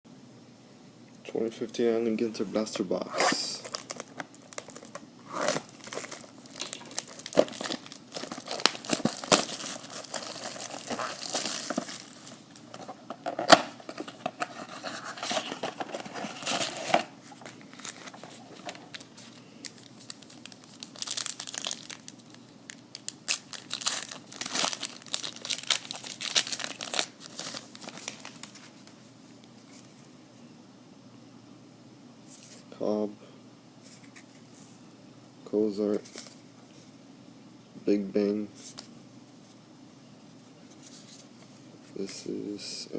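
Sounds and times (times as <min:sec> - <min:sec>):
wrapping crinkling and tearing: 0:03.5 - 0:28.9.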